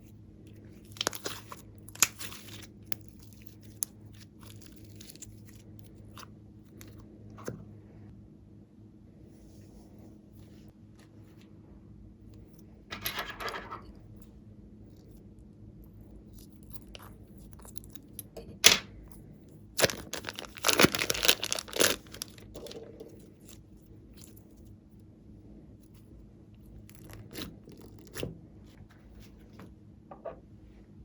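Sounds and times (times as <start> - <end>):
tearing and rustling: 19.8 - 22.8.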